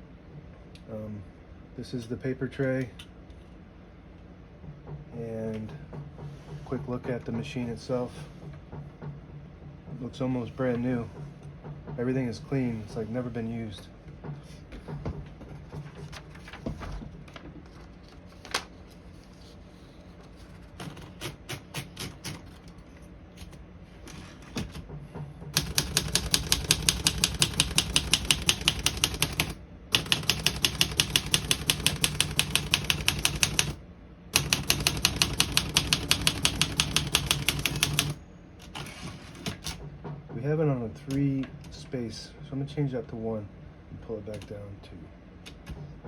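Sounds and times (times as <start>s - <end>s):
typewriter keystrokes: 25.6s - 33.8s, 34.4s - 38.8s.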